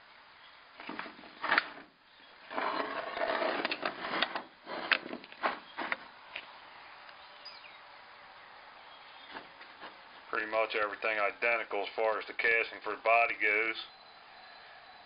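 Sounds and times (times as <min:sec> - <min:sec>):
rustling and scraping: 0:00.8 - 0:06.5, 0:09.2 - 0:10.3.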